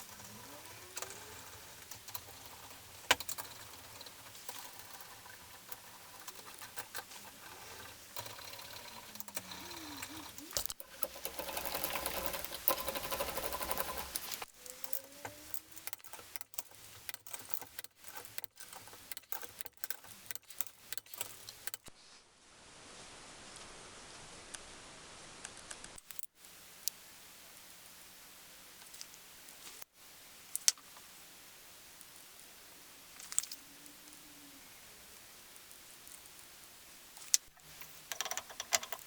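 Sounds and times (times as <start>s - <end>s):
sped-up workshop clicking: 0.0s - 21.9s.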